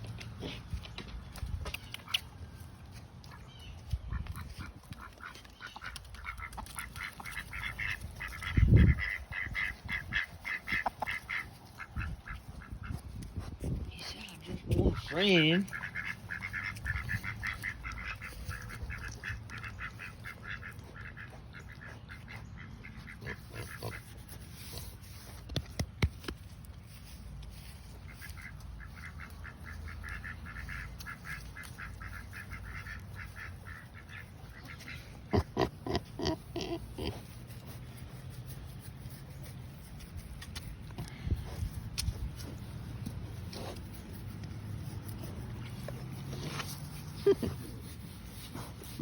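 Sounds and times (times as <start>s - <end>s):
ducks quacking: 3.9s - 13.5s, 14.6s - 24.9s, 27.6s - 38.0s
pig grunting: 35.1s - 37.5s.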